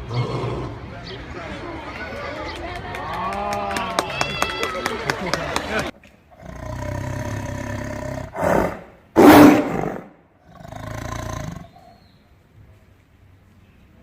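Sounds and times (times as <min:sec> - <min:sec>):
big cat roaring: 0:00.0 - 0:00.9, 0:06.3 - 0:11.9.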